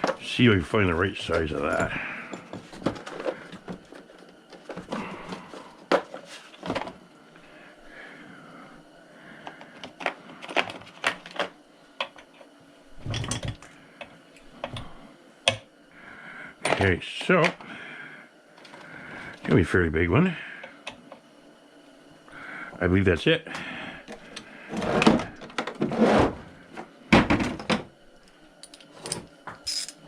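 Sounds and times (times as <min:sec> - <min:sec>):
metal hand tools clinking: 0:28.6 - 0:30.0.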